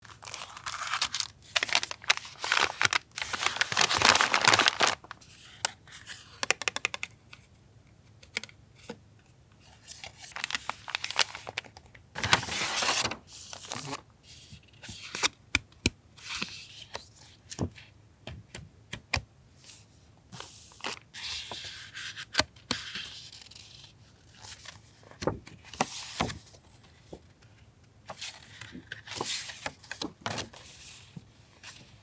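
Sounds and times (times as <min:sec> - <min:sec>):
paper rustling and crinkling: 0:00.0 - 0:06.1, 0:09.7 - 0:14.0.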